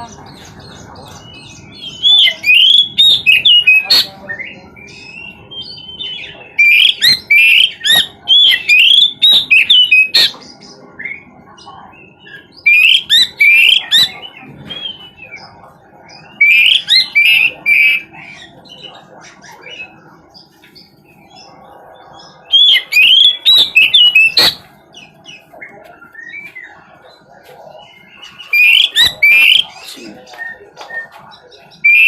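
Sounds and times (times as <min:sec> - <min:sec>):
bird singing whistled phrases: 0:12.6 - 0:15.4, 0:16.2 - 0:18.1, 0:27.9 - 0:31.2, 0:31.8 - 0:32.0.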